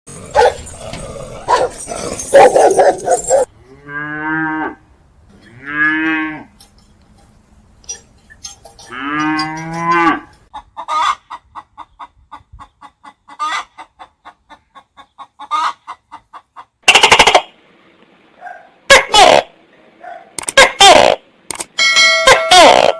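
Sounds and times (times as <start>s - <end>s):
cow mooing: 3.6s - 4.8s, 5.4s - 6.6s, 8.9s - 10.4s
chickens clucking: 7.8s - 17.5s.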